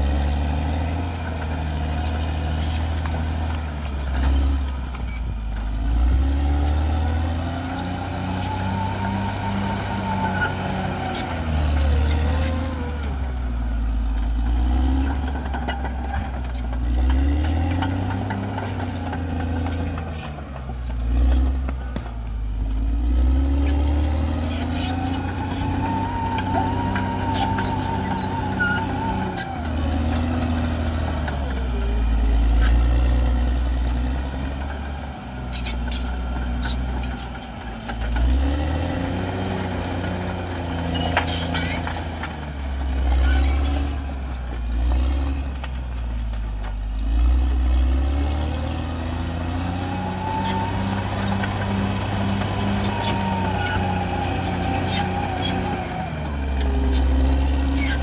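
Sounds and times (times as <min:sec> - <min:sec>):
bulldozer diesel engine under load: 0:00.0 - 0:58.0.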